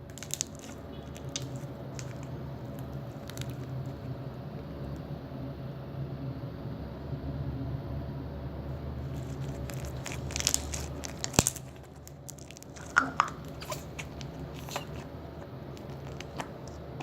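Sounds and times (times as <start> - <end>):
slime clicking and crackling: 0.0 - 4.1, 9.0 - 17.0.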